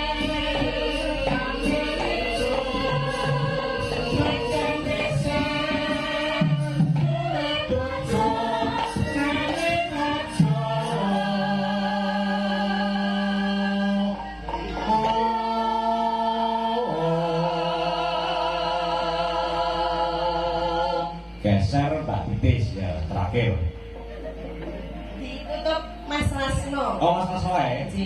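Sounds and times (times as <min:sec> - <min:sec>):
drum strokes: 0:00.0 - 0:12.9
gamelan music: 0:00.0 - 0:28.0.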